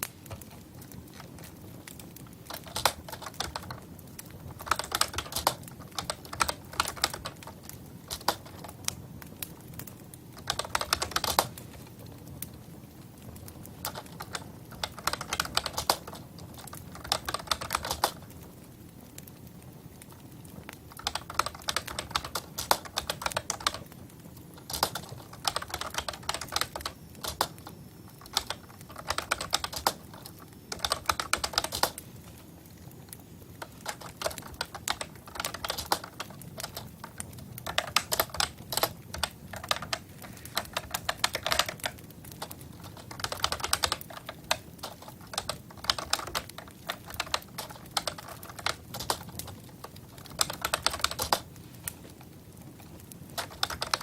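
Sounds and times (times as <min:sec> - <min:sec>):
keyboard typing: 0:02.5 - 0:03.8, 0:04.6 - 0:08.8, 0:10.4 - 0:11.6, 0:13.8 - 0:18.2, 0:21.0 - 0:23.8, 0:24.6 - 0:32.0, 0:33.6 - 0:51.5, 0:53.4 - 0:54.0.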